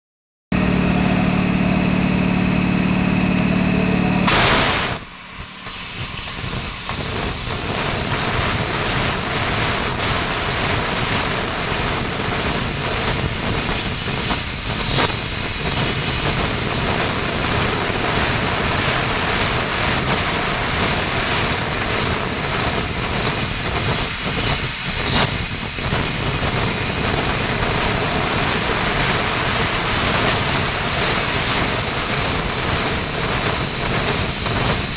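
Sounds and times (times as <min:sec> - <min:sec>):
steady low hum: 0:00.6 - 0:19.9
loud hiss of assist gas: 0:04.3 - 0:34.9.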